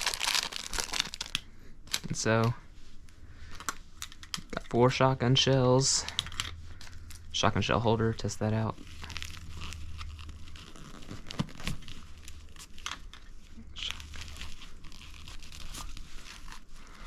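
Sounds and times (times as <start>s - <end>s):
velcro crinkling rustles: 0.0s - 17.0s
plastic shells clicking and scraping: 3.5s - 4.7s.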